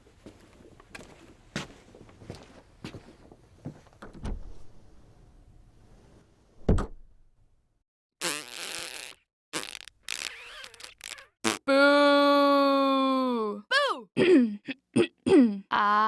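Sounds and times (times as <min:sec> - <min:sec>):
footsteps: 0:00.0 - 0:04.1.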